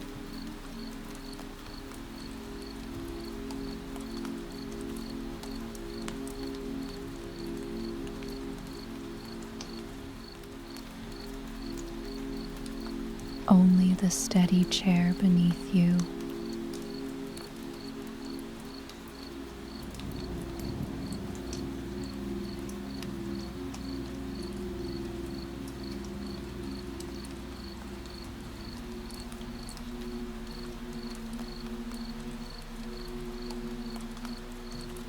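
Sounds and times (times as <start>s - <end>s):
raindrop ticks: 0.0s - 35.0s
cricket chirping: 16.0s - 35.0s.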